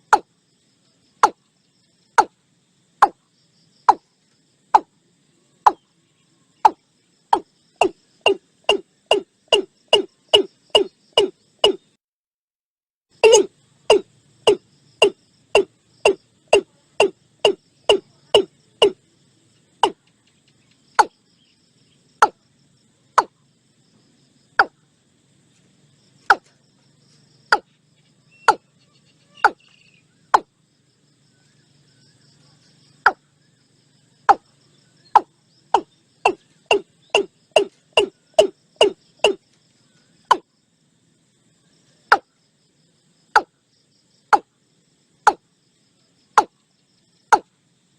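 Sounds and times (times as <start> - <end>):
bird calling deep notes: 7.4 - 11.9, 13.2 - 19.0, 35.1 - 39.4.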